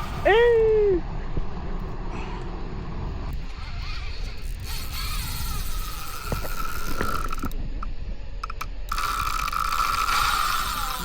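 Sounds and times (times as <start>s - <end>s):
fishing reel drag buzzing: 3.3s - 7.6s, 8.5s - 11.0s
reel clicks: 3.4s - 11.0s.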